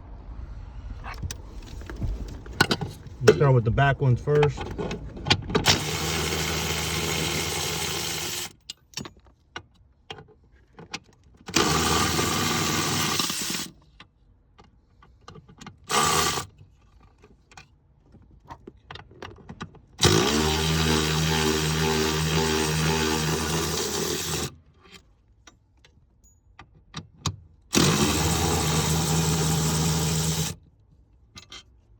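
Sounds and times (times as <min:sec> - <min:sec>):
cordless power tool spinning: 0:05.6 - 0:08.6, 0:11.6 - 0:13.7, 0:15.9 - 0:16.5, 0:20.0 - 0:24.5, 0:27.8 - 0:30.6.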